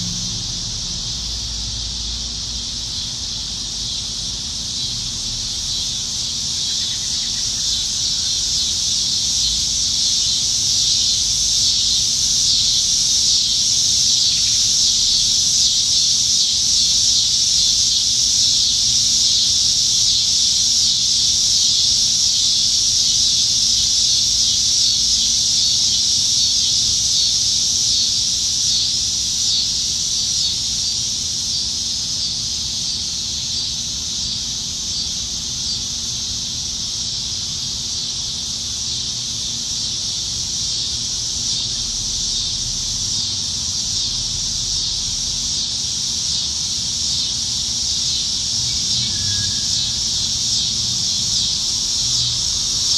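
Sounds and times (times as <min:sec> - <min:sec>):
cicadas buzzing: 0:00.0 - 0:52.9.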